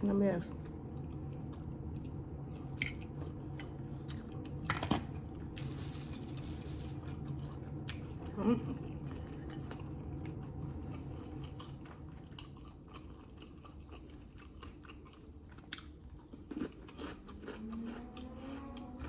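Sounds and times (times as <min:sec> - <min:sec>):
chewing and biting food: 0:00.5 - 0:19.0
low hum: 0:16.3 - 0:19.0.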